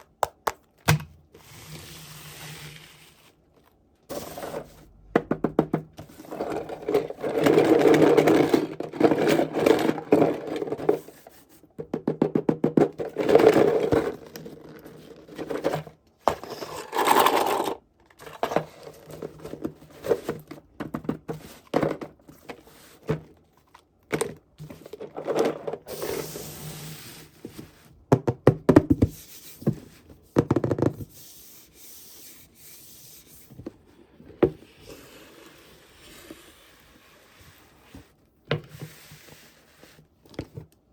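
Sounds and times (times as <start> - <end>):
plastic toys and packaging rustling: 0.2 - 5.2, 6.0 - 28.1.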